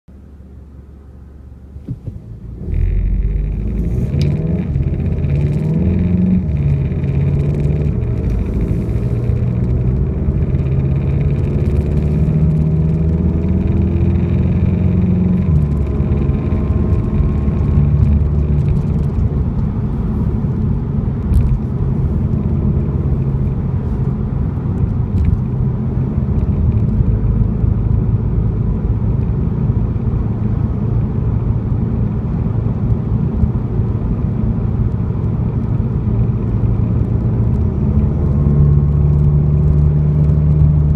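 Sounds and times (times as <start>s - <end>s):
car engine accelerating: 1.5s - 40.9s.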